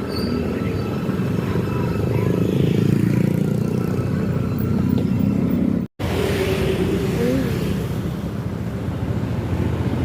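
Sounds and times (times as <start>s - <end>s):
bus engine rumbling: 4.3s - 10.0s.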